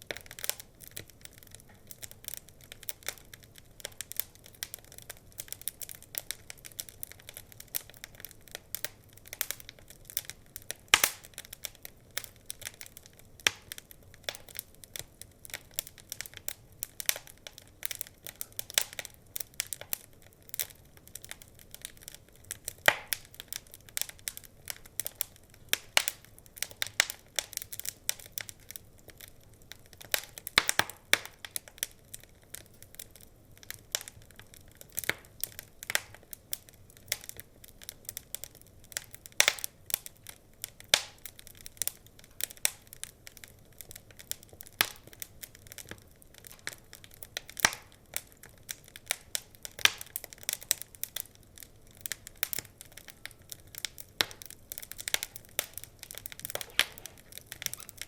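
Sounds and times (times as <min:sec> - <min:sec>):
wood fire crackling: 0:00.0 - 0:58.0.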